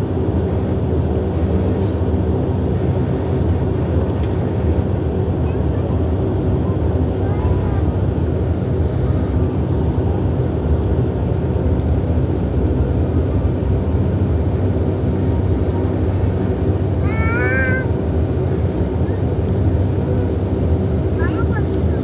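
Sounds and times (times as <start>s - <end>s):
turboprop engines droning in cabin: 0.0s - 22.0s
wavering high-pitched cry: 17.0s - 17.9s.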